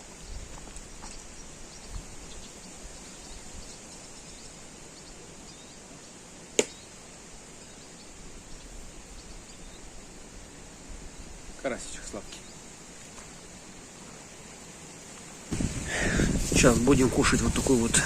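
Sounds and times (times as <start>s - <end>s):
wind buffeting microphone: 0.0s - 3.7s, 15.5s - 18.0s.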